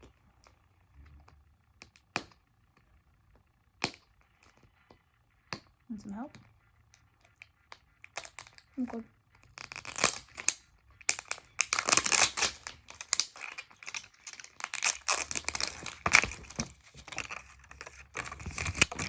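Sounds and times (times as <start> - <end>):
plastic wrapping crinkling and tearing: 8.0 - 19.0.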